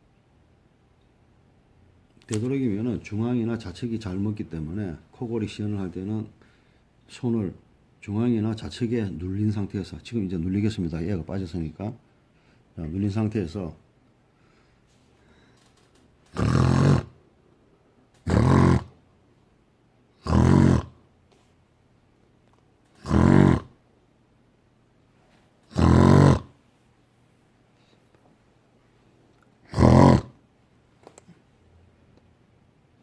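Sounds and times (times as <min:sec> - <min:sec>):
man imitating snoring: 0:16.3 - 0:17.1, 0:18.3 - 0:18.9, 0:20.2 - 0:21.0, 0:23.0 - 0:23.7, 0:25.7 - 0:26.5, 0:29.7 - 0:30.4.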